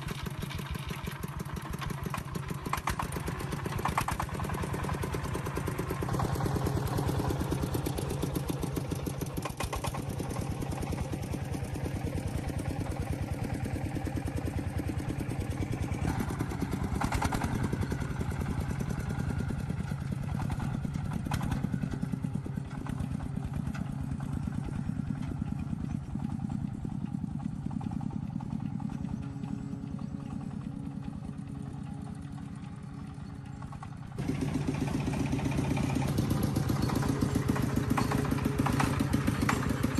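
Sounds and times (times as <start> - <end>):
engine running with rapid beat: 0.0 - 39.9.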